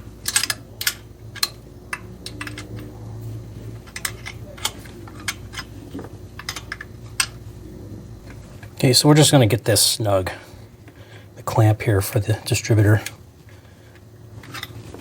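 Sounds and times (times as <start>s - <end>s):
low steady hum: 0.0s - 15.0s
metallic clicks of hand tools: 0.2s - 2.7s.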